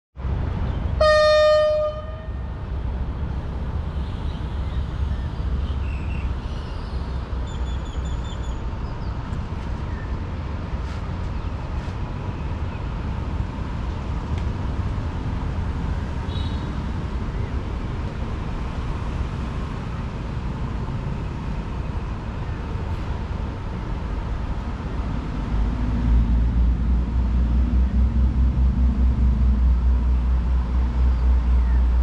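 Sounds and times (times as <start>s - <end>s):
low rumble of train: 0.2s - 32.0s
train horn blast: 1.0s - 2.5s.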